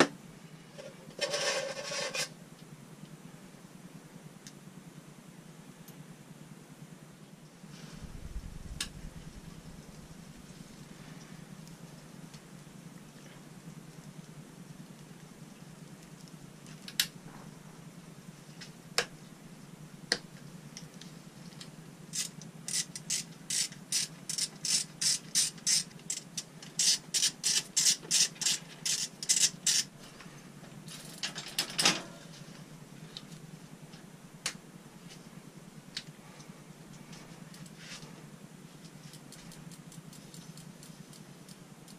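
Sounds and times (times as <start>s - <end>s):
ratchet clicking: 22.1s - 29.9s.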